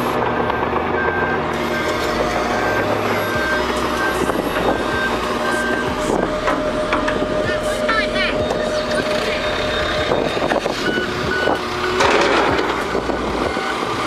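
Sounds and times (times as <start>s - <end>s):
machine engines rumbling: 0.0s - 14.0s
reversing alarm beeping: 0.0s - 14.0s.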